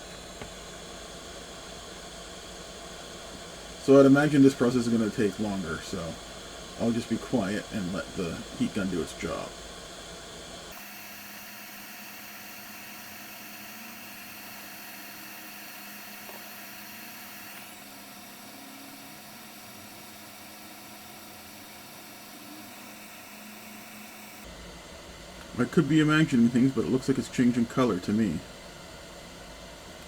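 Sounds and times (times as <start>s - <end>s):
hot-air gun hissing: 0.0s - 24.5s.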